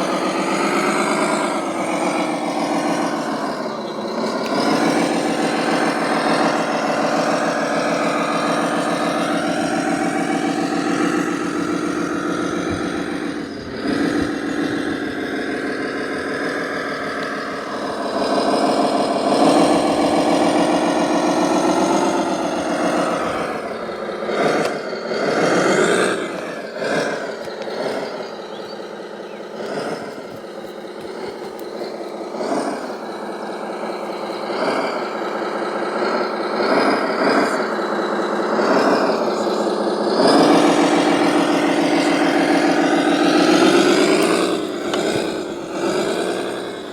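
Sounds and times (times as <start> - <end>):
truck engine running: 0.0 - 46.9.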